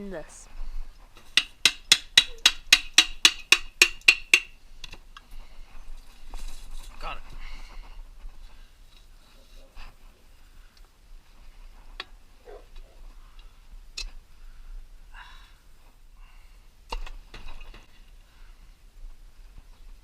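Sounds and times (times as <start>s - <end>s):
faint scraping and handling: 5.2s - 13.2s.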